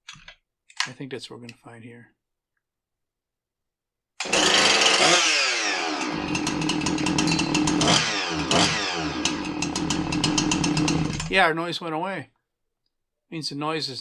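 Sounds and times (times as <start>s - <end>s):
chainsaw engine revving: 4.2s - 11.4s.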